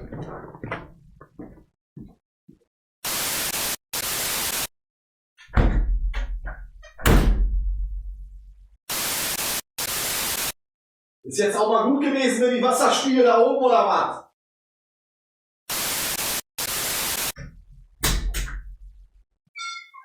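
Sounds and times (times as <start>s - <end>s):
heavy knocks with deep boom: 5.5s - 6.4s, 7.0s - 8.4s.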